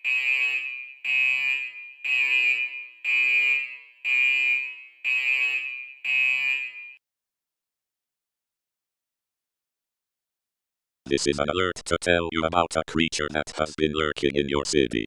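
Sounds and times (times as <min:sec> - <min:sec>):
high-pitched alarm beeps: 0:00.0 - 0:07.0.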